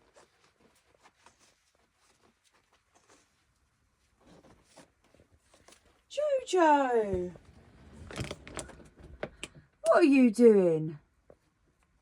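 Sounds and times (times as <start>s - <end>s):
light rustling: 0.0s - 6.1s.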